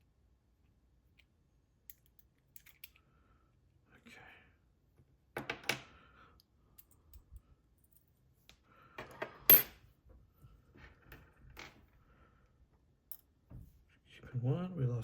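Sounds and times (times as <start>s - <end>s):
padlock parts clinking: 1.1s - 3.0s.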